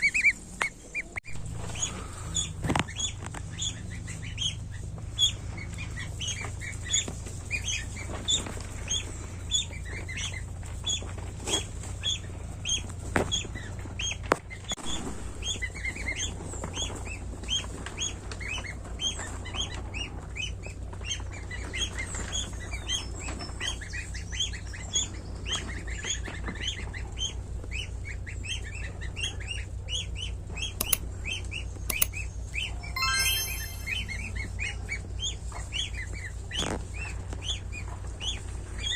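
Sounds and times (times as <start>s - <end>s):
goslings peeping: 0.0s - 14.2s
sharp clicks: 30.8s - 31.0s, 31.9s - 32.1s.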